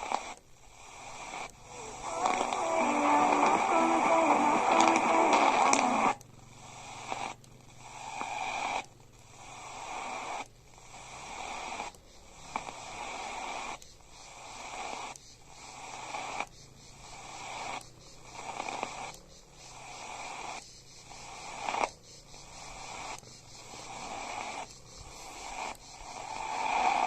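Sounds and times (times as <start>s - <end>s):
radio static hiss and interference: 0.0s - 8.9s, 21.3s - 27.0s
faint steady hum: 0.0s - 27.0s.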